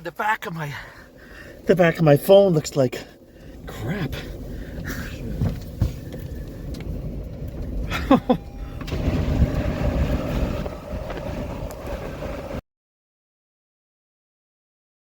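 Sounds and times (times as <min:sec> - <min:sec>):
low rumbling wind: 0:00.0 - 0:12.6
vehicle noise: 0:00.0 - 0:12.6
brief falling squeal: 0:08.3 - 0:09.8.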